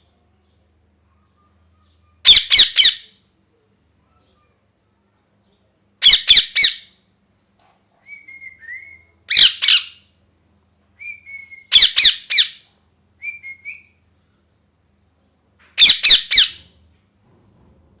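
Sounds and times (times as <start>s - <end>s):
parrot screeching: 2.2s - 3.1s, 6.0s - 6.9s, 9.3s - 10.0s, 11.7s - 12.6s, 15.8s - 16.6s.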